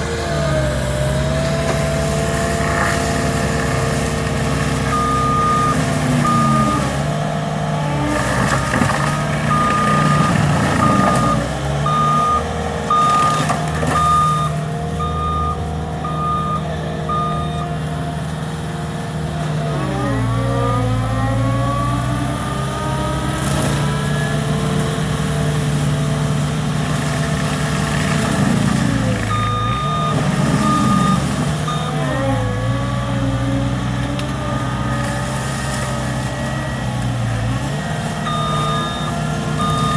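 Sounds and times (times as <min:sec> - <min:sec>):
diesel engine under load: 0:00.0 - 0:39.9
backup alarm beeping: 0:09.5 - 0:13.4, 0:14.0 - 0:17.6, 0:29.3 - 0:32.0, 0:38.3 - 0:39.9.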